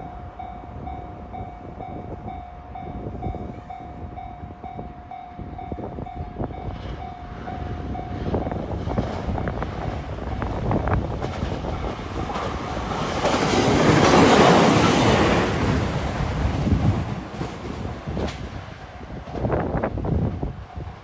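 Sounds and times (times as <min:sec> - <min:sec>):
train passing: 0:00.0 - 0:21.0
train wheels clicking on rails: 0:06.8 - 0:20.1.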